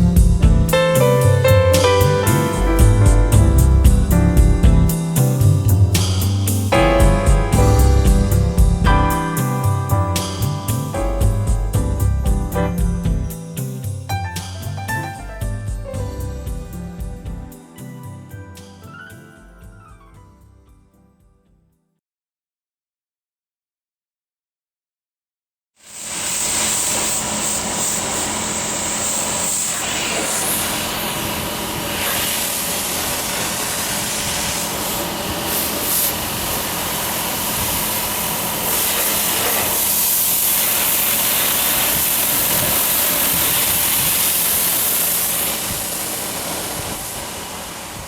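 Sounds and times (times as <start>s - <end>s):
wind and water spray rushing: 26.1s - 48.0s.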